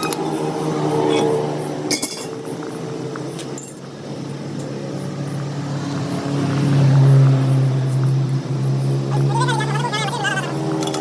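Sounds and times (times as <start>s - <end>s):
metallic clink: 1.9s - 2.4s, 3.4s - 3.9s.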